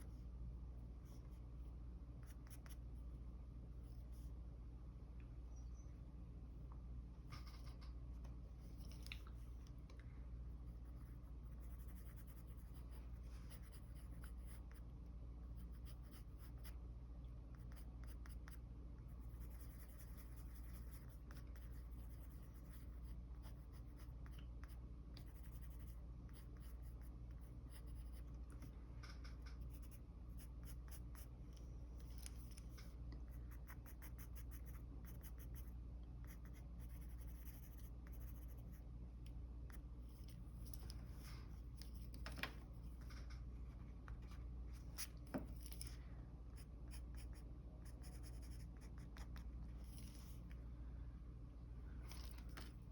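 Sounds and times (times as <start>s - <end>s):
steady low hum: 0.0s - 52.9s
pencil scratching on paper: 10.7s - 14.8s, 15.5s - 16.8s, 17.6s - 28.7s, 32.1s - 38.8s, 46.6s - 50.4s.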